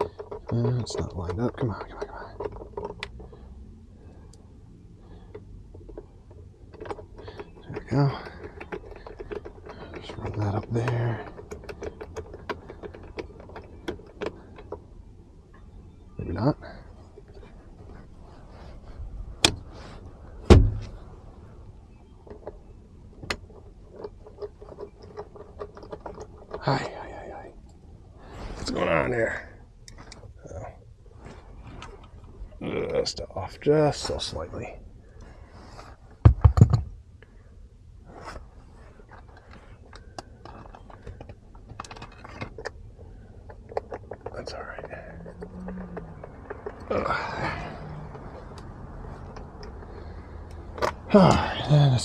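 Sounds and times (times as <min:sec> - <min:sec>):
small parts clicking and tapping: 0:00.0 - 0:04.4, 0:05.0 - 0:14.9, 0:22.1 - 0:27.8, 0:39.0 - 0:51.2
sharp knocks on car part: 0:20.5 - 0:20.9, 0:36.2 - 0:36.9.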